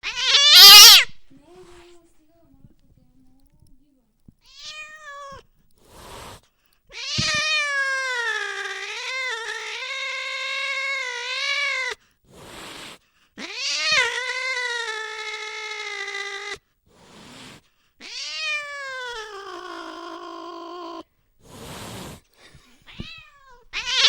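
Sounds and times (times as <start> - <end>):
cat yowling: 0.0 - 1.2, 4.4 - 5.5, 6.9 - 12.0, 13.4 - 16.6, 18.0 - 21.0, 22.9 - 24.0
cat hissing: 0.0 - 2.0, 4.4 - 24.0.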